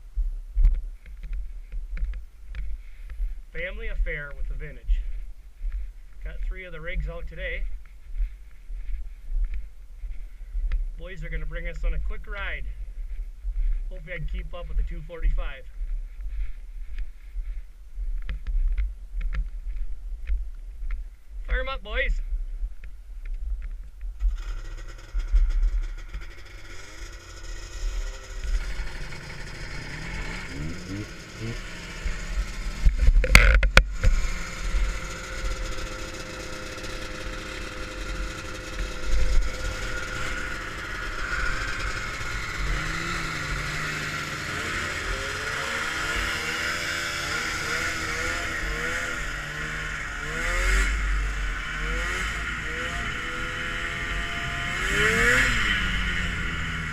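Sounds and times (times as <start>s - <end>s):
snowmobile engines revving: 24.2s - 56.9s.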